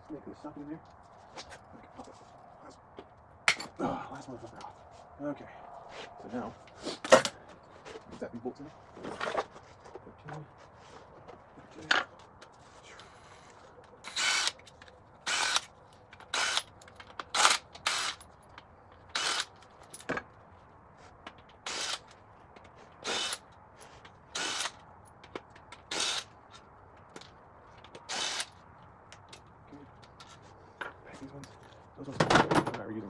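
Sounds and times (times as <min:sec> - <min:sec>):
power wrench bursts: 0:14.1 - 0:14.6, 0:15.2 - 0:16.7, 0:17.3 - 0:18.2, 0:19.1 - 0:19.5, 0:21.6 - 0:22.1, 0:23.0 - 0:23.4, 0:24.3 - 0:24.8, 0:25.8 - 0:26.3, 0:28.1 - 0:28.5.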